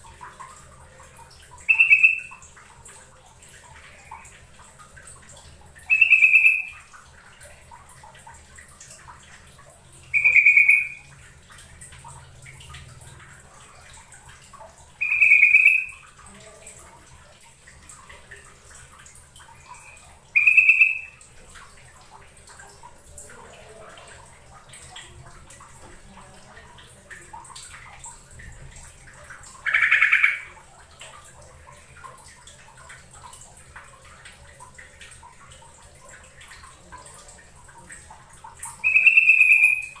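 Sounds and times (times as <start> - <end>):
faint trickle of water: 0.0 - 40.0
bulbul calling: 1.6 - 2.4, 5.8 - 6.9, 10.1 - 11.1, 15.0 - 16.0, 19.7 - 21.2, 29.6 - 30.5, 38.8 - 40.0.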